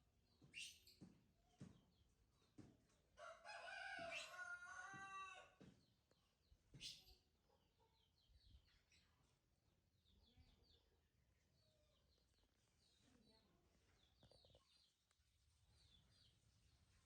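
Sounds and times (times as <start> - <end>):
faint small birds chirping: 0.0 - 17.0
rooster crowing: 3.2 - 5.5.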